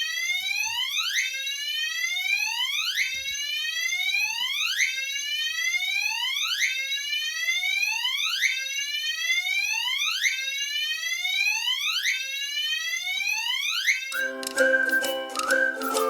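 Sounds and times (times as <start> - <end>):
music: 14.2 - 16.0.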